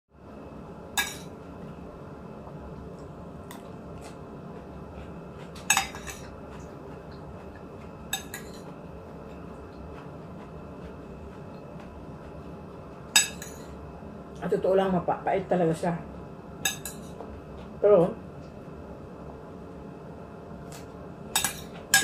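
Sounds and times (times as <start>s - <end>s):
low background hum: 0.1s - 22.0s
cutlery clinking against a plate: 1.0s - 1.3s, 5.4s - 6.7s, 8.1s - 8.8s, 13.1s - 13.8s, 16.6s - 17.2s, 20.7s - 22.0s.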